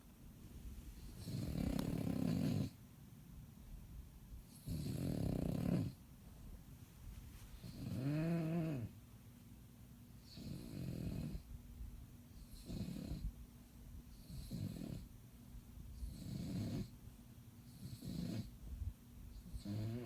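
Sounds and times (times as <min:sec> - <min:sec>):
dog snoring: 0:01.0 - 0:02.8, 0:04.5 - 0:06.0, 0:07.6 - 0:09.0, 0:10.2 - 0:11.5, 0:12.4 - 0:13.3, 0:14.1 - 0:15.1, 0:16.0 - 0:17.0, 0:17.7 - 0:18.6, 0:19.4 - 0:20.0.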